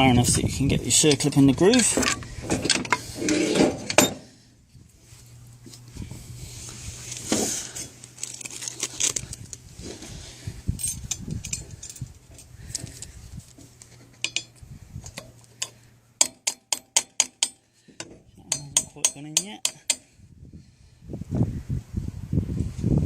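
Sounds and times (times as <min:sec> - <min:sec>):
metal parts clinking and scraping: 0:01.0 - 0:04.3, 0:07.0 - 0:10.0, 0:10.7 - 0:17.6.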